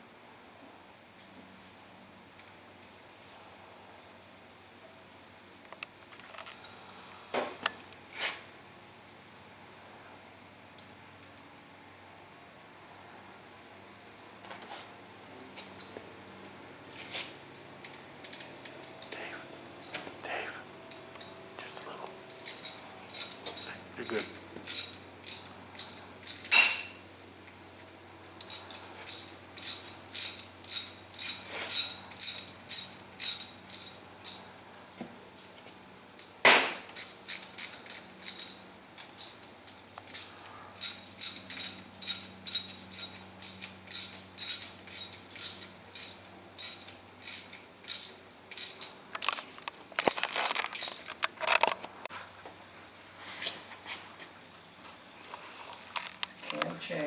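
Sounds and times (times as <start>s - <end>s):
metal clanking on metal: 22.4s - 27.0s, 36.5s - 49.0s
ratchet wrench clicking: 28.4s - 34.4s, 36.9s - 48.9s.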